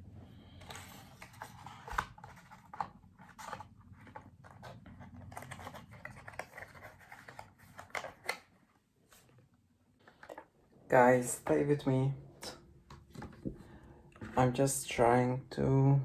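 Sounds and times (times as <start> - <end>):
packaging rustling and scratching: 0.4 - 9.4, 10.0 - 10.6.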